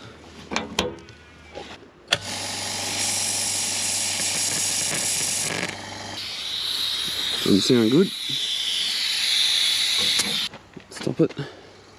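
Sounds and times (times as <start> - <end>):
machine humming and hissing: 2.2 - 10.5.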